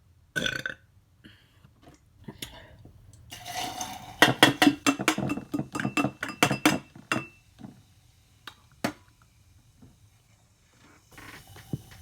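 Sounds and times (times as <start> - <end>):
utensil clinking on a plate: 2.3 - 7.4.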